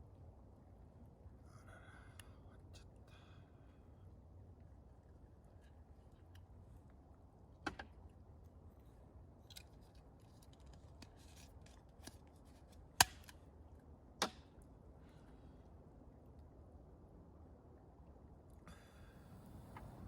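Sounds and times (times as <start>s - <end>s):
quiet handling sounds: 8.1s - 13.4s.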